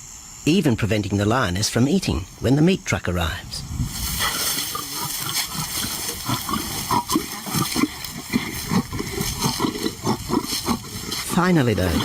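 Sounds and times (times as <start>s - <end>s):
lions growling and snarling: 4.0s - 12.0s.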